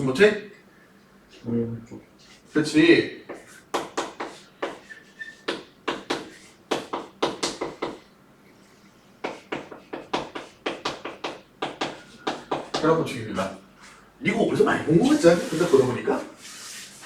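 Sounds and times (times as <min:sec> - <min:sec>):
writing on a board: 0:03.2 - 0:08.1, 0:09.2 - 0:13.0.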